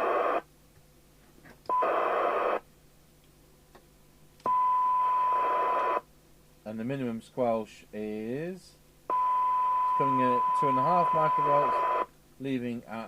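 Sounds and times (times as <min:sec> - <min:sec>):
radio receiver hiss: 0:00.0 - 0:00.5, 0:01.7 - 0:02.6, 0:09.9 - 0:12.1
steady high test tone: 0:09.1 - 0:12.0.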